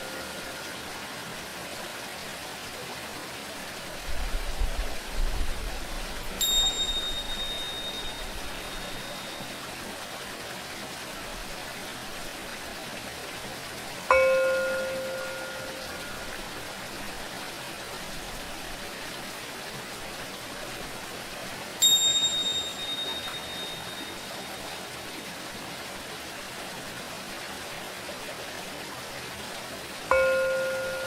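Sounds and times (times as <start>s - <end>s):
running water: 0.0s - 31.0s
tingsha cymbals strike: 6.4s - 9.6s, 14.1s - 16.4s, 21.8s - 24.7s, 30.1s - 31.0s.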